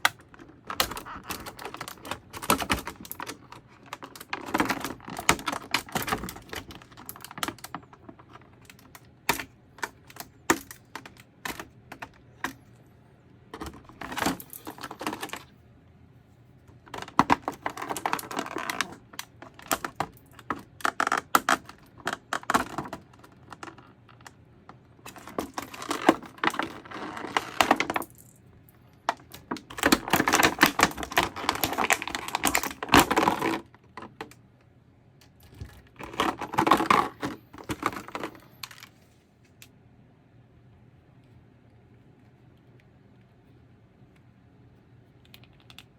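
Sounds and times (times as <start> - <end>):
packaging rustling and scraping: 29.2 - 33.7, 35.5 - 39.4.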